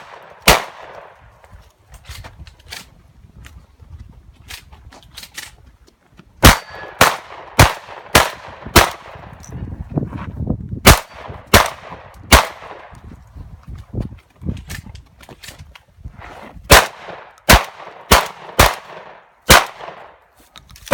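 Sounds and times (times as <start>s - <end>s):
shotgun shots: 0.0s - 1.2s, 6.4s - 9.4s, 10.8s - 12.9s, 16.7s - 20.2s.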